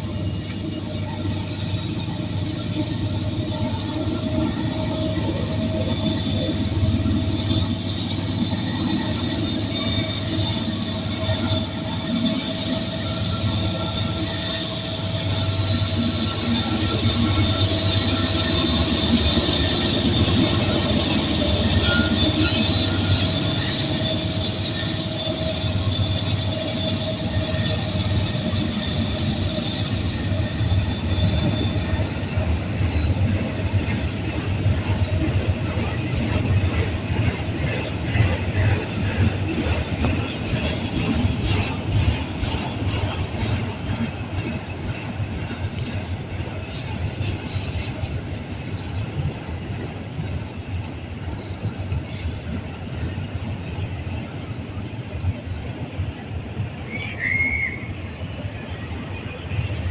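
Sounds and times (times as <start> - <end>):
high-pitched wheel squeal: 0.0 - 48.1, 56.8 - 59.9
freight train cars rolling past: 0.0 - 59.9
wheels clicking over rail joints: 0.1 - 54.8.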